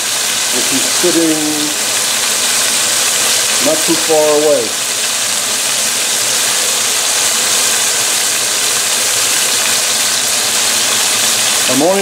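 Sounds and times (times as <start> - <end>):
chicken frying in oil: 0.0 - 12.0
range hood fan running: 0.0 - 12.0.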